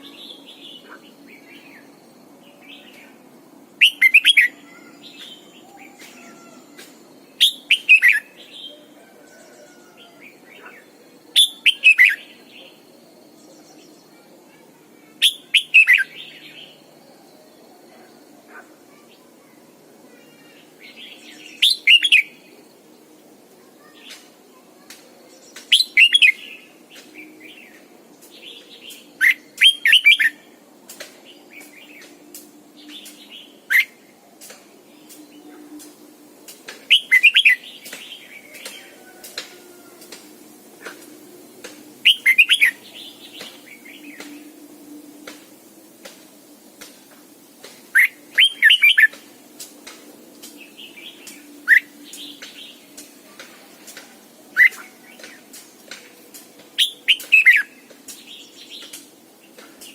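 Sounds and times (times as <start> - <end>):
bird singing warbled phrases: 3.8 - 6.6, 7.3 - 9.4, 10.3 - 17.4, 20.2 - 22.5, 25.4 - 27.8, 28.4 - 30.5, 36.9 - 39.2, 42.0 - 44.4, 47.9 - 49.2, 49.8 - 59.9.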